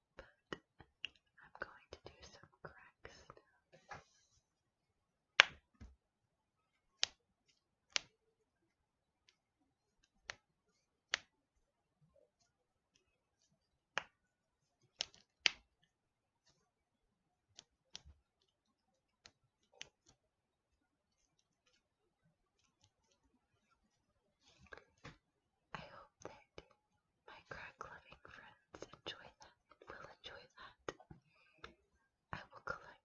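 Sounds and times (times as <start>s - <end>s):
knuckles cracking: 5.4s - 5.9s, 7.0s - 7.2s.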